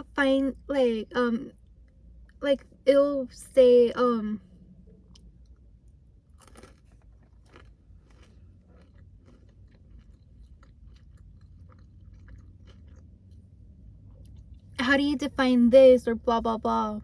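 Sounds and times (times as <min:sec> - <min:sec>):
person chewing food: 0:05.0 - 0:14.7.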